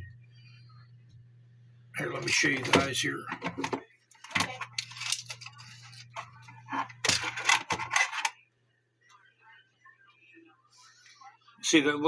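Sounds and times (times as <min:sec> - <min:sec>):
metal watch clinking and scraping: 0:04.6 - 0:08.3.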